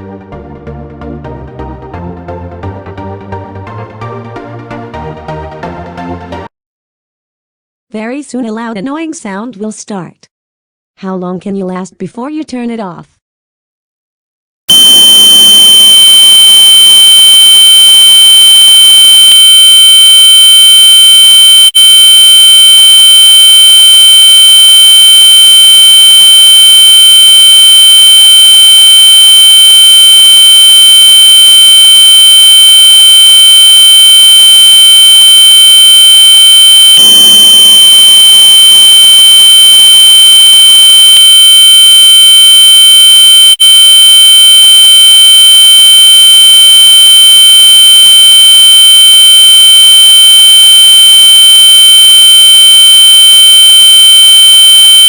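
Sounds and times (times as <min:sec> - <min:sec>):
piercing high-pitched electronic tone: 0:14.7 - 0:55.0.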